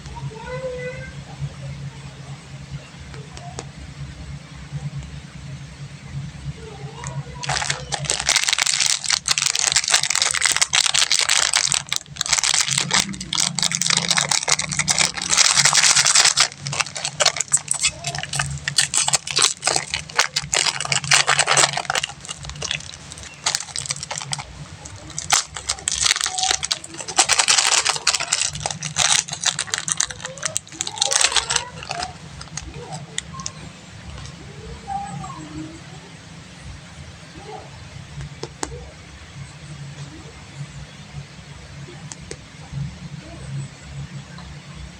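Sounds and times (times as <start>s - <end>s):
plastic wrappers crinkling: 7.0s - 34.4s.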